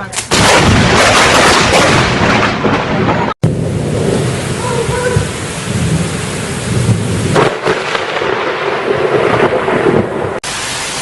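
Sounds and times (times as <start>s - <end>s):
sharp thunder crack: 0.3s - 10.5s
thunder rumbling: 0.3s - 11.0s
heavy rain hissing: 3.4s - 8.4s, 9.1s - 11.0s.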